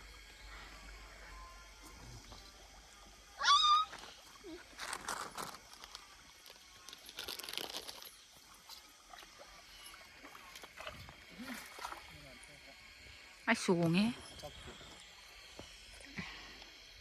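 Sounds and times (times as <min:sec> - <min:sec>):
high wavering animal cry: 0:03.4 - 0:04.1.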